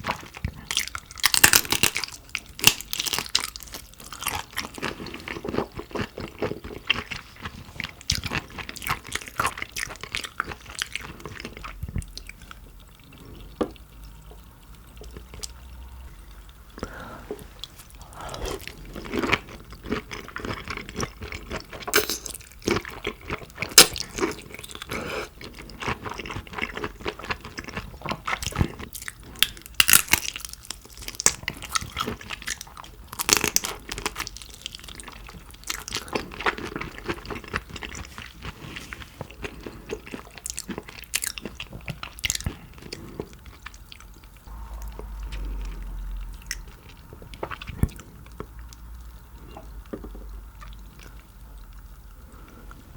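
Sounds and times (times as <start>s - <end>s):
person chewing shrimp: 0.0s - 52.9s
faint low hum: 41.5s - 52.9s.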